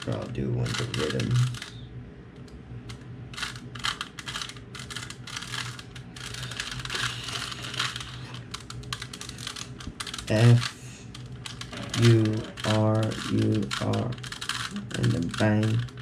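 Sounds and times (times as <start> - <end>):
plastic puzzle cube clicking: 2.9 - 10.7, 11.5 - 16.0.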